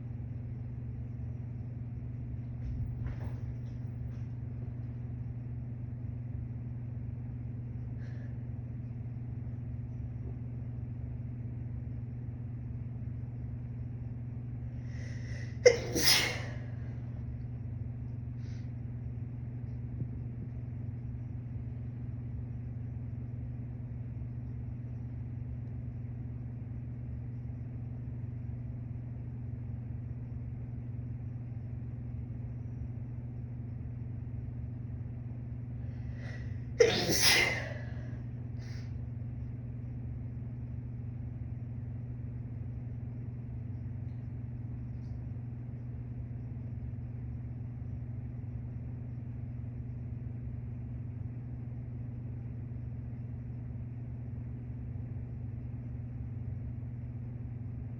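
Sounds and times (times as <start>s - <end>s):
woman sneezing: 15.6s - 16.8s, 36.8s - 38.0s.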